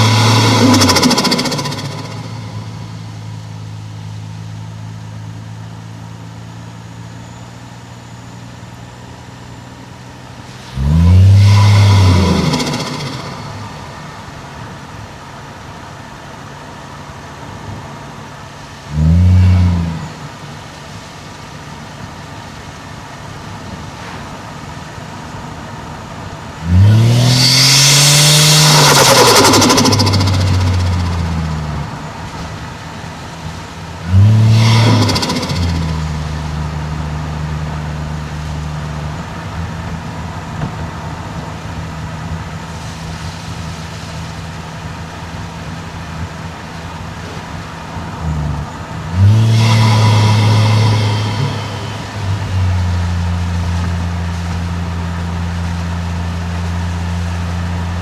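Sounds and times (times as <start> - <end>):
turbo hiss and flutter: 0.0 - 3.8, 10.6 - 14.6, 26.9 - 32.0
car engine revving: 0.0 - 7.4, 10.2 - 15.2, 17.7 - 24.3, 25.0 - 58.0.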